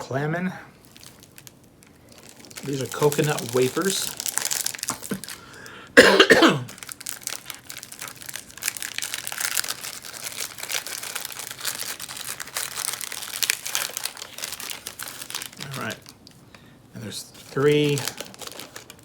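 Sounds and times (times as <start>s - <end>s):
snack wrapper crinkling: 0.8s - 5.9s, 6.6s - 19.0s
person coughing: 6.0s - 6.7s.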